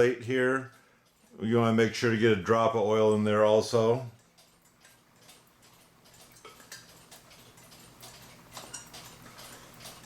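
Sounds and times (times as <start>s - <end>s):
clock parts clicking and tapping: 0.0s - 1.8s, 3.8s - 10.0s.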